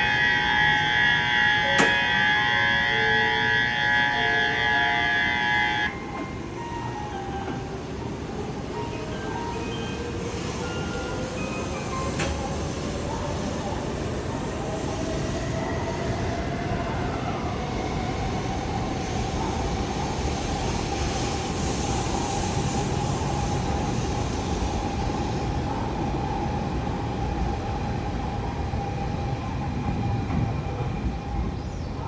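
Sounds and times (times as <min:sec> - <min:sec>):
high-speed train rumbling and whining: 0:00.0 - 0:32.0.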